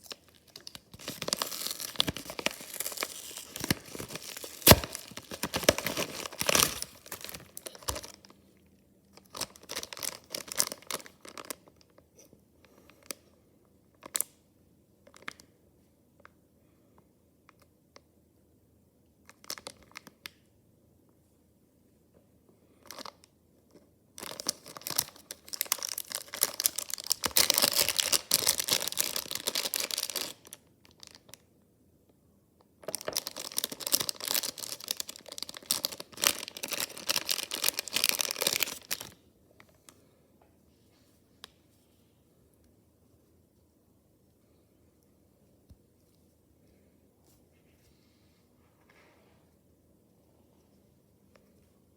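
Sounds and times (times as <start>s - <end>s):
packaging tearing and crinkling: 0.0s - 8.3s, 9.3s - 11.6s, 24.2s - 31.2s, 32.9s - 39.2s.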